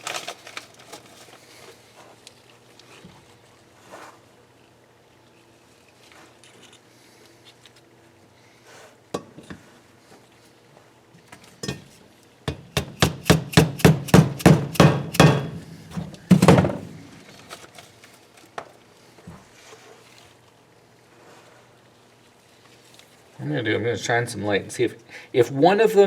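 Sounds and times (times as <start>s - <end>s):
hammer tapping on metal: 12.5s - 15.6s.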